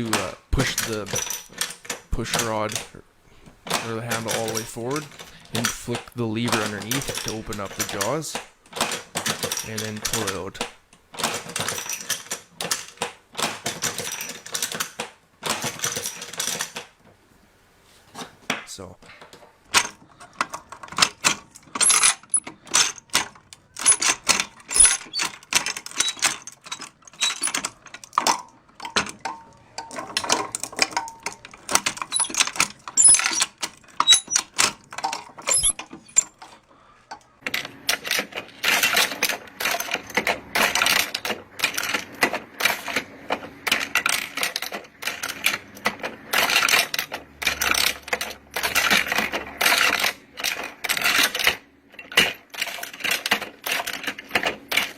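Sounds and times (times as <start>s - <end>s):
metallic clicks and clacks: 3.6s - 17.0s, 18.5s - 54.9s.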